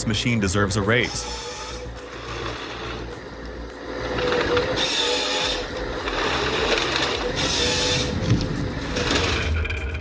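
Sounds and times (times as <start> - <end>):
forestry machine running: 0.0 - 10.0
harsh high-pitched noise bursts: 0.8 - 3.0, 7.4 - 8.4.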